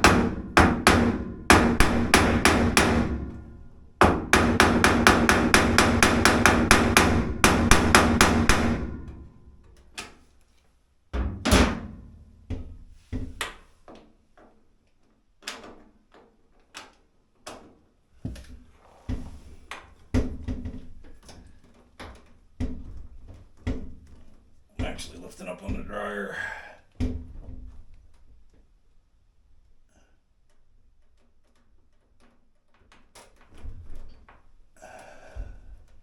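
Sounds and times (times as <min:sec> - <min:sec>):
hammer tapping on screwdriver: 0:04.0 - 0:09.2.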